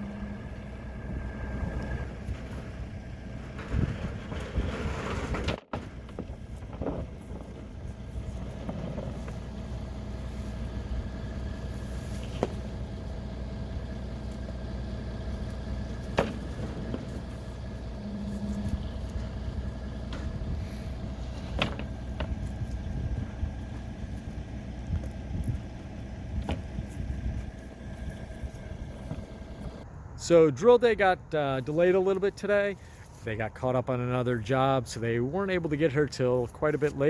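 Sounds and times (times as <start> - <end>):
motor humming: 0.0 - 29.9.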